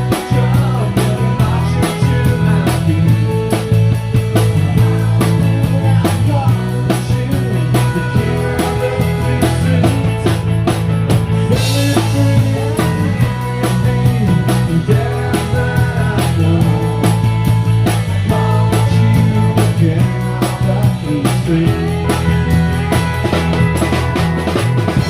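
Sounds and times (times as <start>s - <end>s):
bass guitar low notes: 0.0s - 25.0s
drum kit beat: 0.0s - 25.0s.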